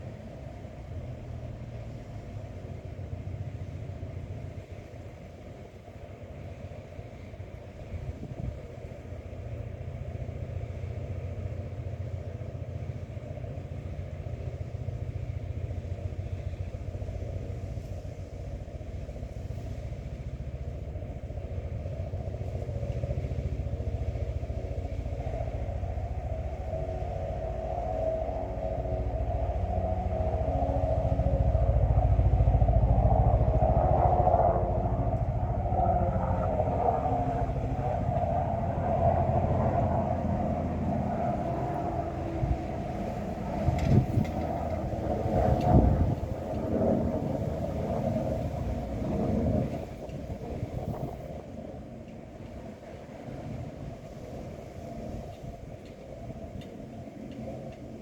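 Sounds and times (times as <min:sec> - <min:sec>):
wind on microphone: 0:00.0 - 0:12.4, 0:14.4 - 0:58.0
droning sound: 0:15.4 - 0:58.0.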